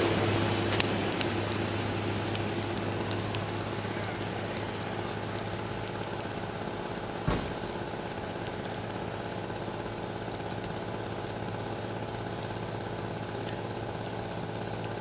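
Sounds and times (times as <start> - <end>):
campfire crackling and popping: 0.0 - 15.0
low thump: 7.2 - 7.6.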